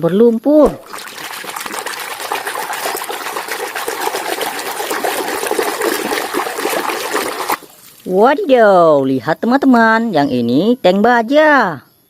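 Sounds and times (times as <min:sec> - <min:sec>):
water splashing and sloshing: 0:00.7 - 0:08.4.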